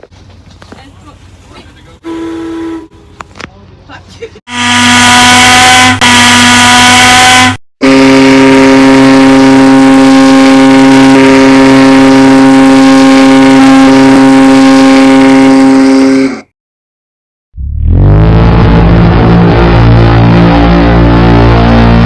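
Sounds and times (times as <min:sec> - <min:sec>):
ship's horn blasts: 0:02.0 - 0:03.2, 0:04.5 - 0:16.5, 0:17.6 - 0:22.0.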